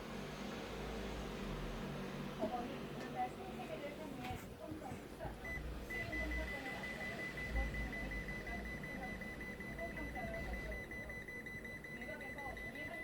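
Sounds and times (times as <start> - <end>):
high-pitched beep: 5.5 - 13.0.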